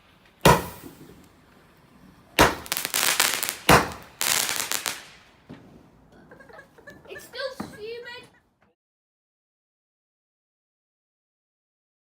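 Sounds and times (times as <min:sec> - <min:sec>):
firework bangs: 0:00.0 - 0:01.3, 0:02.3 - 0:05.8
firework crackling: 0:00.0 - 0:01.5, 0:02.3 - 0:05.5
small pop: 0:02.4 - 0:02.9, 0:03.7 - 0:04.1.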